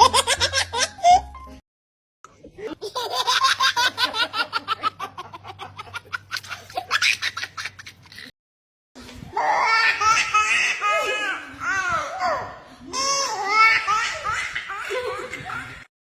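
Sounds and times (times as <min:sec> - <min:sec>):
baby giggling: 0:02.8 - 0:08.3, 0:12.9 - 0:15.8
baby laughter swooping in pitch: 0:02.8 - 0:08.3, 0:13.0 - 0:15.9.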